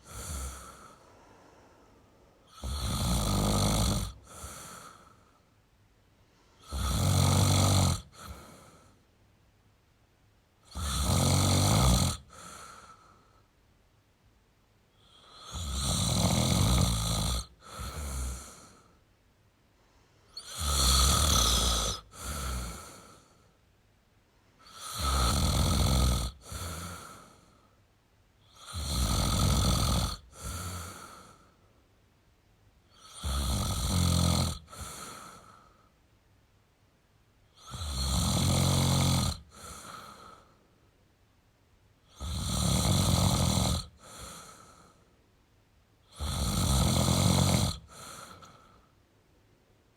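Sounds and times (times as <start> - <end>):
man snoring: 0.0 - 1.0, 2.4 - 5.4, 6.6 - 9.0, 10.6 - 13.1, 15.0 - 19.0, 20.3 - 23.4, 24.6 - 27.6, 28.4 - 31.5, 32.9 - 35.7, 37.5 - 40.6, 42.0 - 45.0, 46.0 - 48.8
soft breath out: 0.0 - 2.6.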